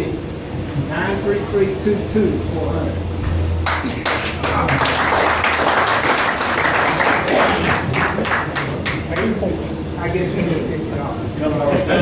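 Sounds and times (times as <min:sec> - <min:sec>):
sharp individual claps: 0:03.6 - 0:09.4
audience applauding: 0:03.6 - 0:09.5.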